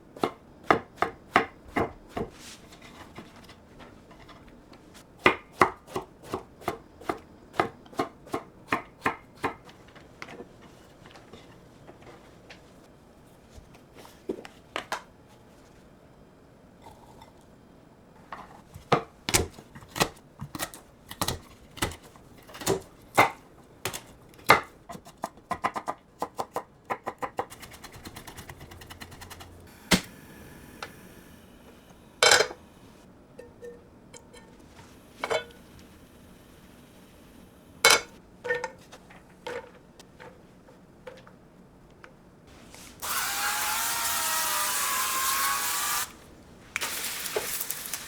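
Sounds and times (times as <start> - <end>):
kitchen utensils knocking: 32.2 - 32.6, 37.9 - 38.8.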